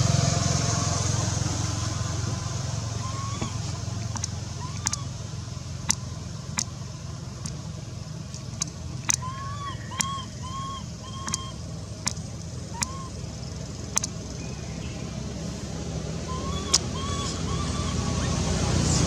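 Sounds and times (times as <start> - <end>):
sharp clicks: 2.7 - 5.1, 8.3 - 9.3, 9.9 - 10.4, 11.2 - 14.4, 16.7 - 17.0
baby monkey squeaking cries: 2.8 - 5.1, 9.0 - 11.6, 12.7 - 13.2, 16.3 - 18.5.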